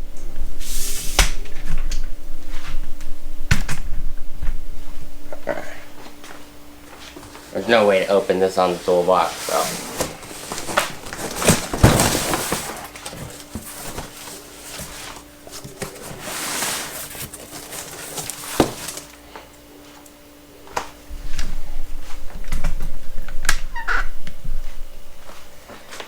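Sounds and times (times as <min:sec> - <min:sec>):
faint steady hum: 0:00.0 - 0:26.0
cardboard scraping and rustling: 0:07.0 - 0:19.2.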